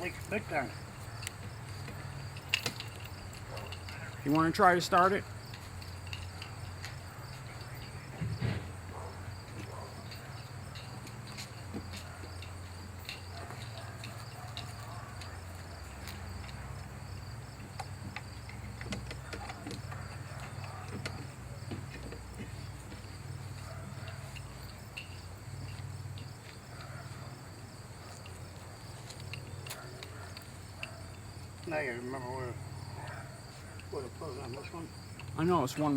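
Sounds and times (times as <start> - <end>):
insect chirping: 0.0 - 35.9
light clicks and knocks: 17.6 - 26.9.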